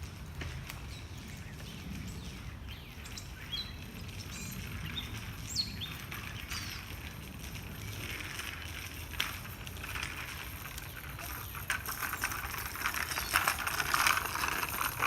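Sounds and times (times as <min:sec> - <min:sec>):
small birds chirping: 0:00.8 - 0:07.1.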